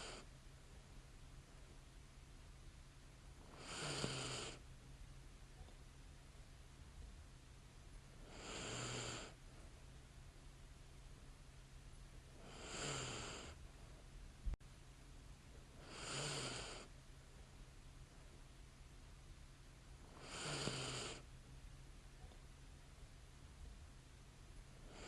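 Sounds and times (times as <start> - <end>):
person snoring softly: 0.0 - 0.3, 3.4 - 4.6, 8.2 - 9.4, 12.4 - 13.6, 15.8 - 16.9, 20.1 - 21.3.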